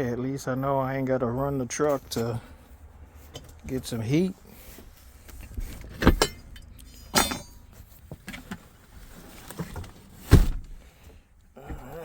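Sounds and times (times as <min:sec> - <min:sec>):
objects knocking and clunking: 0:05.4 - 0:08.6.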